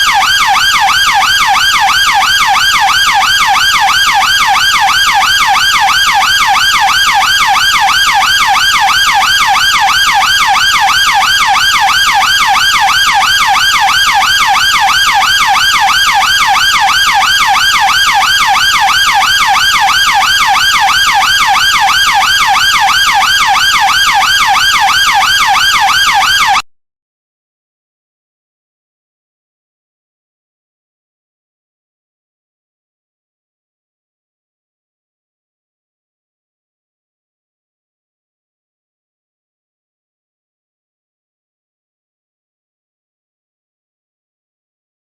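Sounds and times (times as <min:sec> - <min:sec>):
police car siren yelping: 0:00.0 - 0:26.6.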